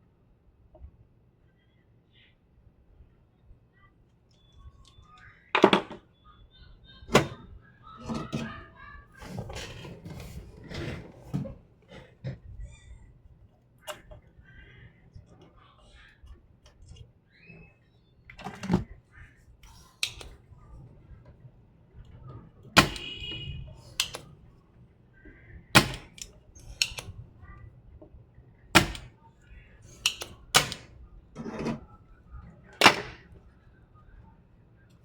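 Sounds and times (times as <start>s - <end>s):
tools and parts clicking and knocking: 5.6s - 6.0s, 19.6s - 20.4s, 22.7s - 24.4s, 25.7s - 27.2s, 28.8s - 29.1s, 29.9s - 31.8s, 32.7s - 33.3s.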